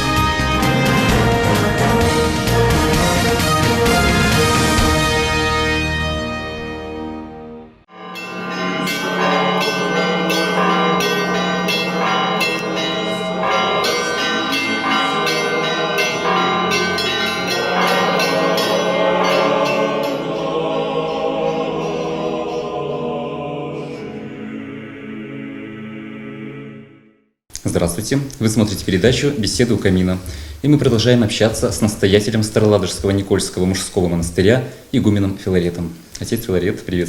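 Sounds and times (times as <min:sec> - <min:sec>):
church bells ringing: 0:07.9 - 0:24.3.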